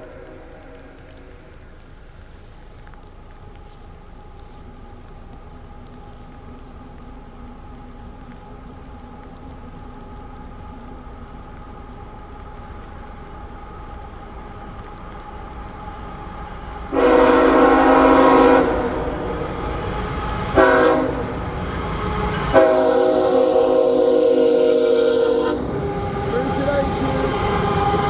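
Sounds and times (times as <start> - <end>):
locomotive low rumble: 0.0 - 28.0
train air horn blasts: 16.9 - 28.0.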